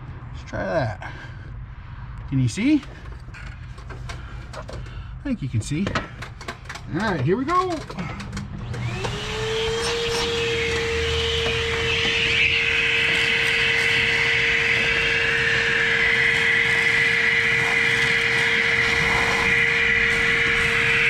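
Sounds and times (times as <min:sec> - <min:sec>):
vacuum cleaner running: 0:07.8 - 0:21.0.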